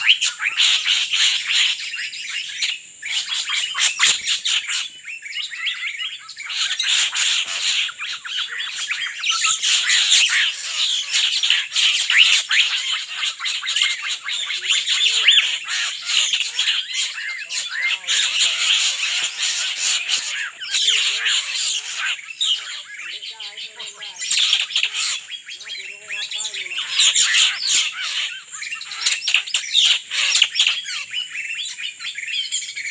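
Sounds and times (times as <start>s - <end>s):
birds chirping and squawking: 0.0s - 32.9s.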